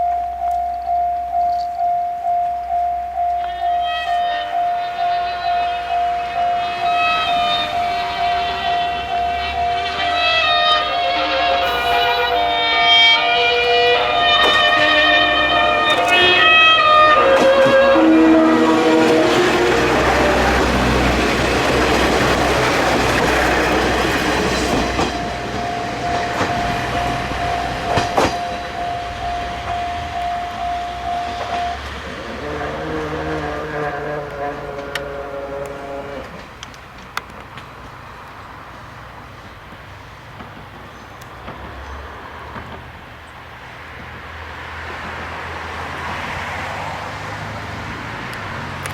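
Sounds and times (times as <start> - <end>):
steady high tone: 0.0 - 32.8
diesel railcar engine rumble: 0.0 - 48.9.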